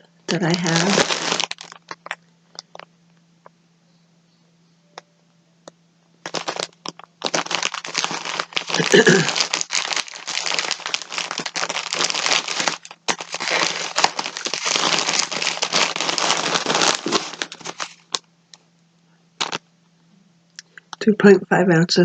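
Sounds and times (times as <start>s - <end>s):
packaging crinkling: 0.0s - 2.9s, 6.2s - 18.3s, 19.4s - 19.6s
faint low hum: 0.0s - 22.0s.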